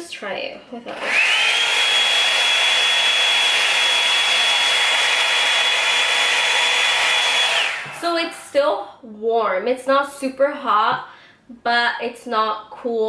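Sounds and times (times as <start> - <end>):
blow dryer air rush: 0.9 - 8.3.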